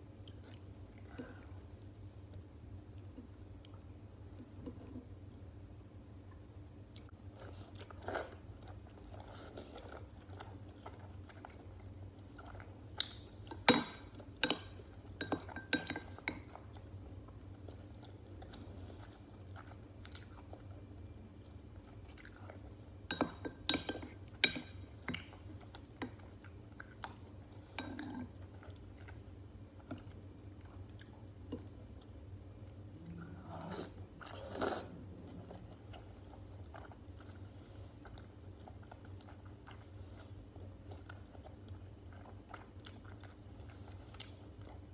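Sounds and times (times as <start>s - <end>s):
chewing and biting food: 34.2s - 44.9s.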